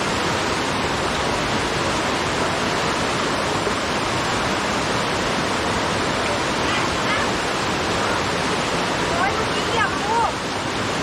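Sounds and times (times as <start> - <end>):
rushing water: 0.0 - 11.0.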